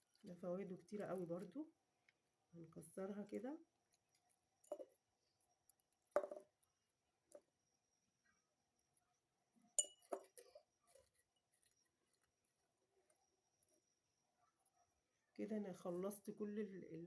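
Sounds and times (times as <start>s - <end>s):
clinks in a glass jar: 4.6s - 5.0s, 9.8s - 11.2s.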